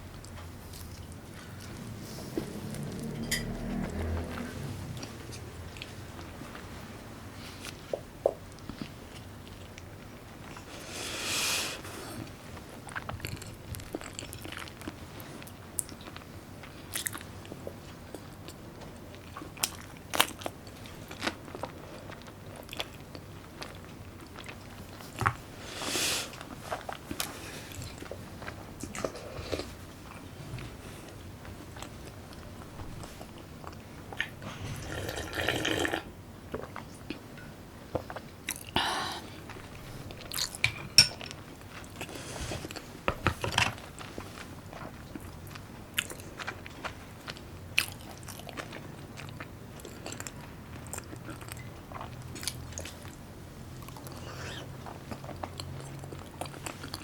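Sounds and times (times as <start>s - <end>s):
person chewing and biting: 40.1s - 40.6s.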